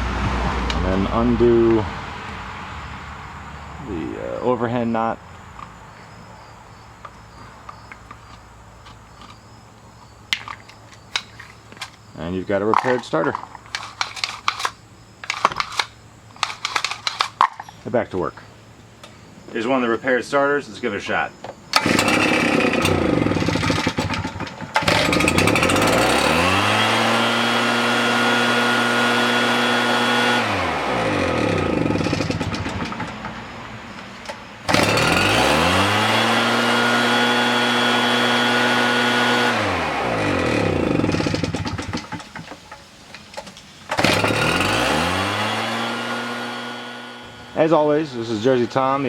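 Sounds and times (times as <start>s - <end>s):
leaf blower engine revving: 21.7s - 42.8s, 43.4s - 49.0s.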